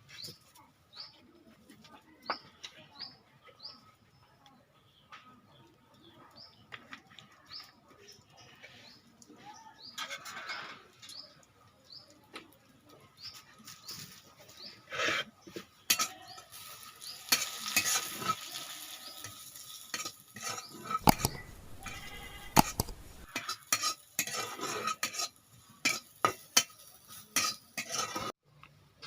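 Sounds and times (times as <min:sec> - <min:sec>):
metal spoon scraping pan: 0:13.9 - 0:28.4
food sizzling: 0:15.9 - 0:28.4
spoon clinking against pan: 0:19.2 - 0:28.3.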